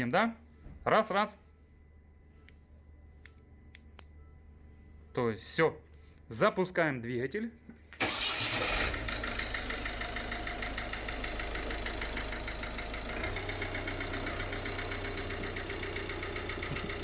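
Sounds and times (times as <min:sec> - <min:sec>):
diesel engine idling: 0:08.0 - 0:17.0
rhythmic engine knock: 0:10.1 - 0:17.0.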